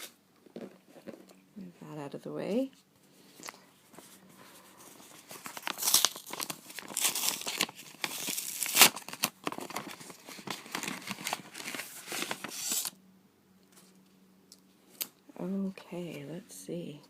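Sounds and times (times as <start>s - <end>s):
package tearing and crinkling: 5.1s - 13.0s.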